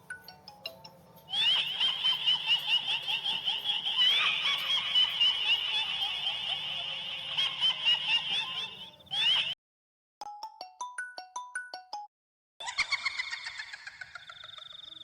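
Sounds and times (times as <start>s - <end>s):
chorus of frogs calling: 1.3s - 9.6s.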